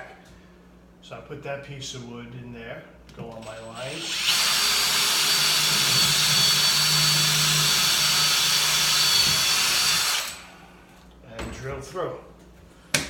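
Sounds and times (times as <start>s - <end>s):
power drill whining: 3.7s - 10.6s.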